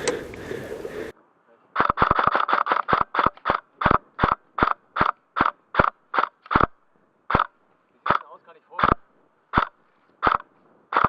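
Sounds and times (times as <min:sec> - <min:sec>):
airsoft gun firing shots: 0:08.1 - 0:11.0.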